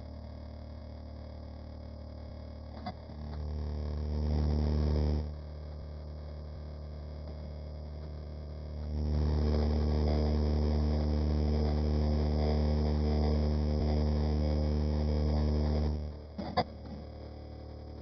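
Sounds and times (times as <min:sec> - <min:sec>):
hot-air blower humming: 0:08.8 - 0:16.4.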